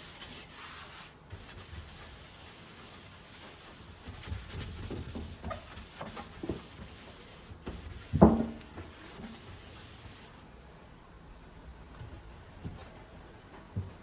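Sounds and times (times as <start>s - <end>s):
rubbing and scraping on counter: 0.0s - 10.4s.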